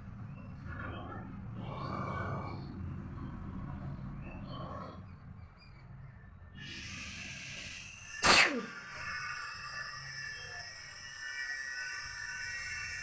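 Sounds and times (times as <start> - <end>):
breathy hissing: 6.6 - 13.0
person sneezing: 8.2 - 8.8.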